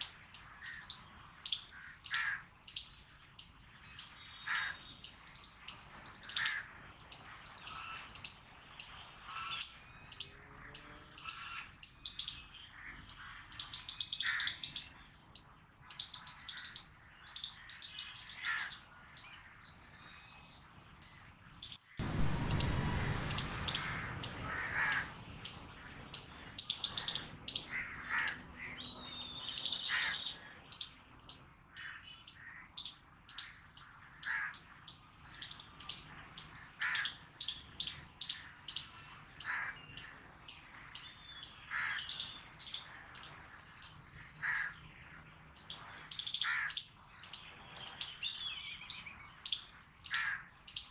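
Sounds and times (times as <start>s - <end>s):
squirrel barking alarm calls: 0.0s - 19.9s, 21.0s - 44.8s, 45.6s - 50.9s
low rumbling noise: 22.0s - 27.8s.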